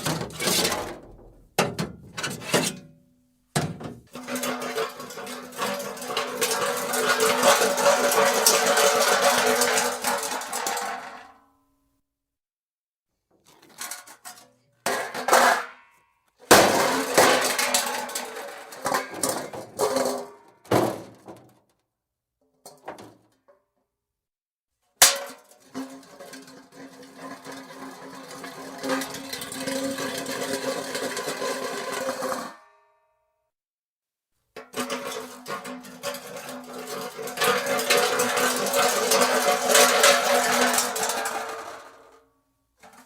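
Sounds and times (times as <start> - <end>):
hubcap crashing and clattering: 3.7 - 11.2, 16.5 - 20.3, 25.0 - 32.6, 34.6 - 42.0
hubcap rolling on concrete: 4.0 - 11.3, 25.6 - 32.5, 34.6 - 42.2.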